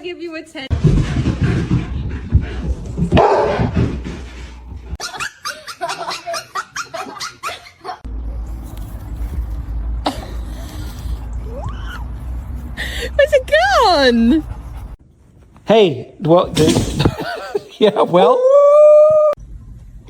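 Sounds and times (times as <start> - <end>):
low rumbling noise: 0.7 - 5.0, 19.4 - 20.0
dog barking: 3.1 - 3.9.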